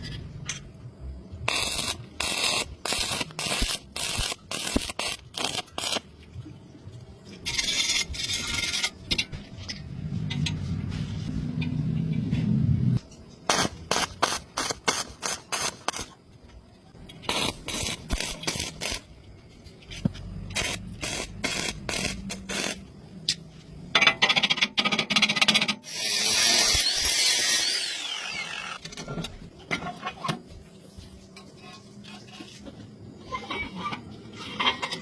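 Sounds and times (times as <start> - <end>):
steady high hiss: 13.4 - 16.3, 20.5 - 23.1.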